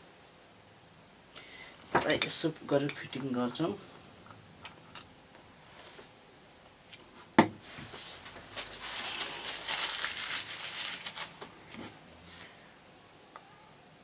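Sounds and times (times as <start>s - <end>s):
crinkly rustling: 7.7s - 12.0s.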